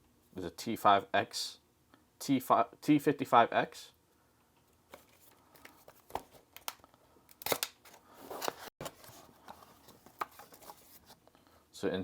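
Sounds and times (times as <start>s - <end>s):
cardboard packaging rustling: 4.9s - 11.2s.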